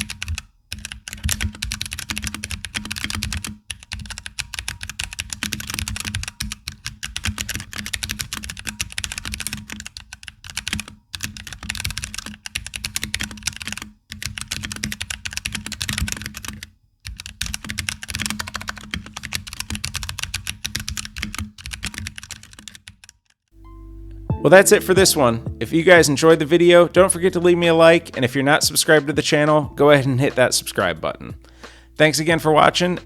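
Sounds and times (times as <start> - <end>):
mechanical keyboard typing: 0.0 - 23.3.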